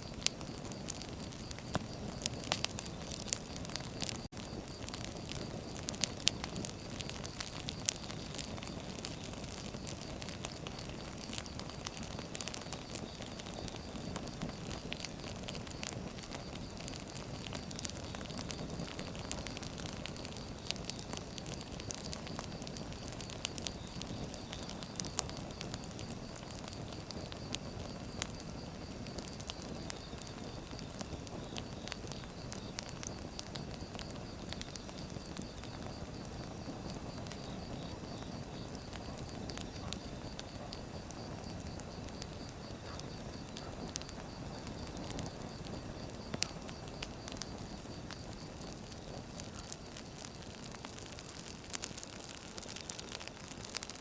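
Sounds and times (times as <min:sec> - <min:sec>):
fire crackles and pops: 0:00.0 - 0:54.0
firewood burning: 0:00.0 - 0:54.0.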